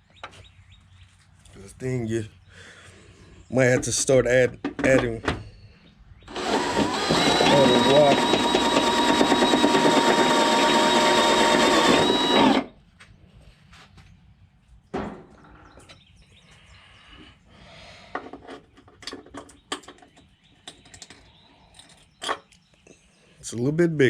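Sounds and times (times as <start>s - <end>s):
electric drill boring into metal: 6.3s - 12.7s.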